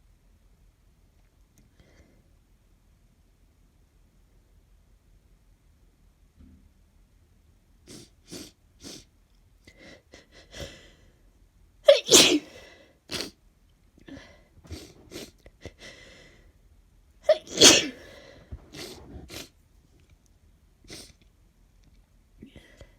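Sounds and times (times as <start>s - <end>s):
woman sneezing: 11.9s - 13.3s, 17.3s - 18.2s.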